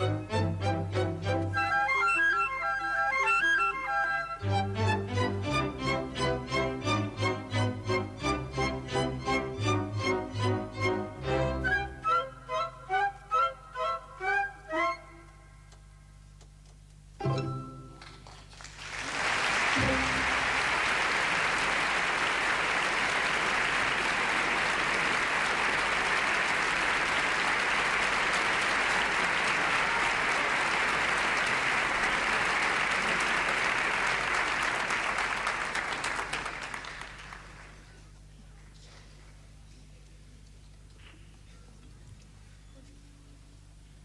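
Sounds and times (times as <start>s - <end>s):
audience applauding: 18.0s - 37.9s.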